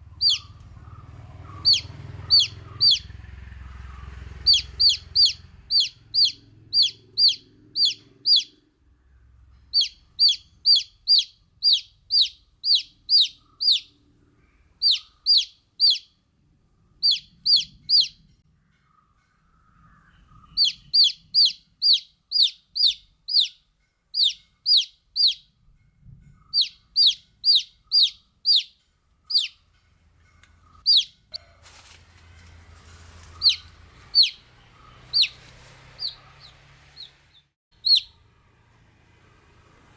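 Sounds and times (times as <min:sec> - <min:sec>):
baby chicks peeping: 0:00.0 - 0:03.2, 0:04.4 - 0:08.6, 0:09.7 - 0:14.0, 0:14.8 - 0:16.1, 0:17.0 - 0:18.3, 0:20.3 - 0:23.6, 0:24.2 - 0:25.5, 0:26.5 - 0:29.6, 0:30.7 - 0:31.4, 0:32.8 - 0:38.2
faint rustling: 0:31.4 - 0:34.1.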